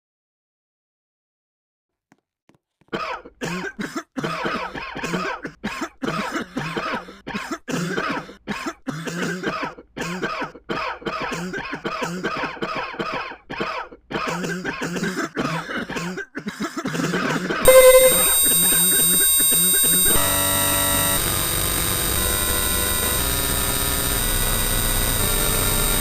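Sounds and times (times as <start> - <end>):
person coughing: 3.0 - 17.6.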